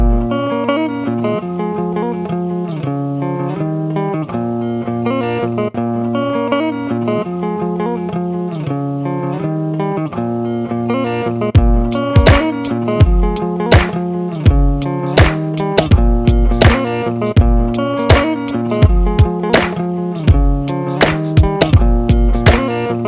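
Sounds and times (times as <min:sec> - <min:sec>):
guitar music: 0:00.0 - 0:23.0.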